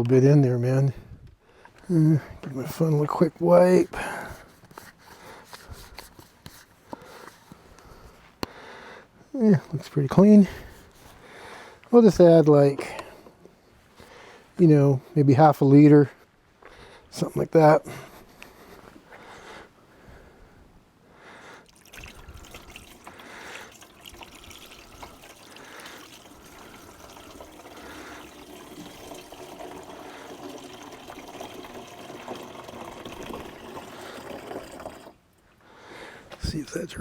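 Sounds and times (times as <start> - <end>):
fluid trickling through a funnel: 21.6 - 35.2.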